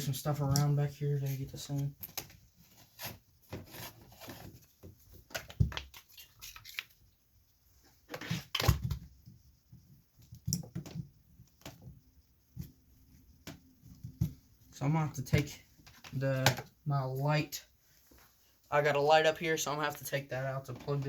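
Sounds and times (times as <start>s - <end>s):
rustling and light knocks: 8.8s - 14.6s.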